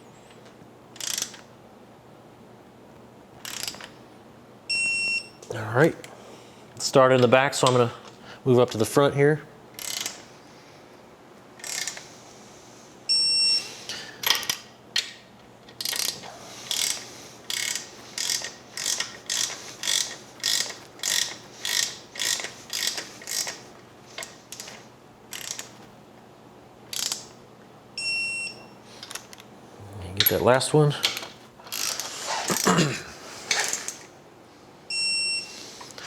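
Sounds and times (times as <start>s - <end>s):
wrench ratchet strokes: 1.0s - 1.4s, 3.4s - 3.9s, 9.8s - 10.3s, 11.6s - 12.1s, 15.8s - 25.8s, 26.9s - 27.4s, 31.7s - 32.1s.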